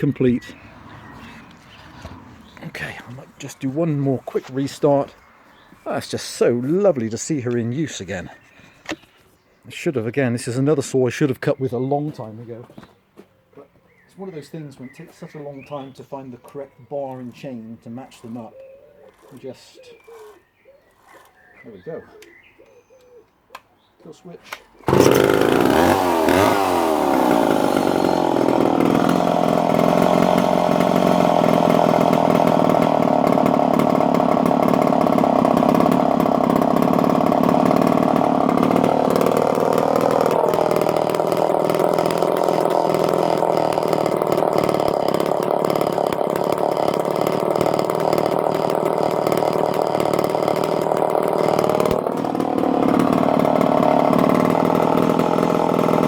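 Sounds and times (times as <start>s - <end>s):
chainsaw engine running: 24.8s - 56.0s.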